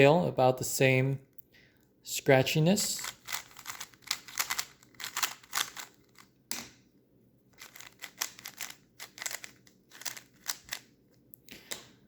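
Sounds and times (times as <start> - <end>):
plastic puzzle cube clicking: 3.0 - 6.3, 7.6 - 10.8.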